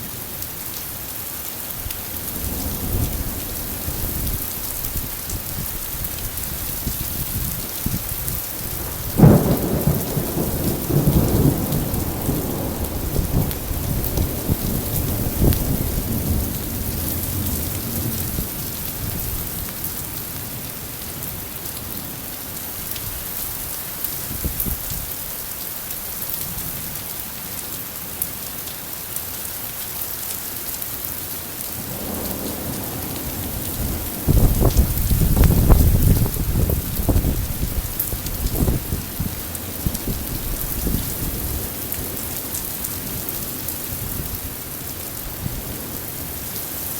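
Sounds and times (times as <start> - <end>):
rain falling: 0.0 - 46.9
thunder rumbling: 1.9 - 19.8, 31.8 - 46.5.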